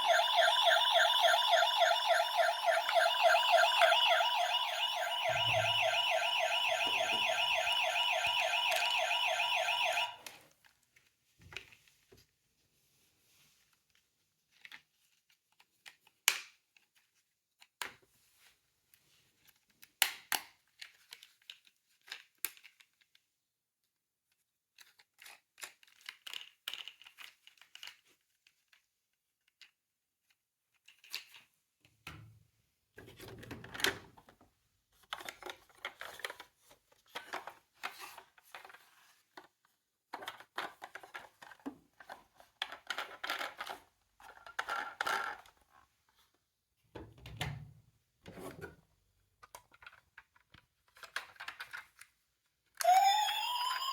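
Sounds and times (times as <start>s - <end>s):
toy cars clicking and clattering: 19.4s - 23.2s, 24.8s - 28.8s, 30.7s - 31.5s, 35.0s - 39.5s, 40.1s - 45.6s, 49.4s - 52.2s.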